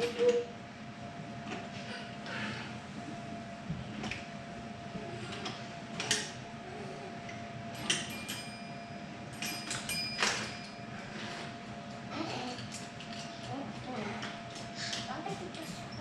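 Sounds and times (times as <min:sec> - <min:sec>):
faint high hum: 0:00.0 - 0:16.0.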